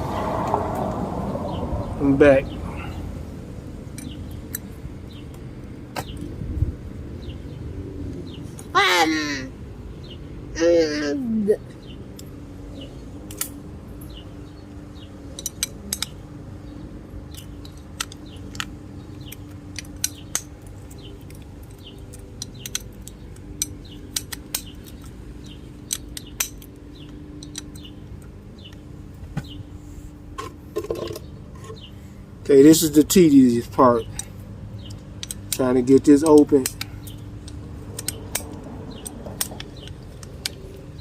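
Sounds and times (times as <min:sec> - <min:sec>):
metallic clicks of small tools: 0:13.3 - 0:13.6, 0:15.3 - 0:16.2, 0:17.3 - 0:28.8, 0:34.2 - 0:40.9.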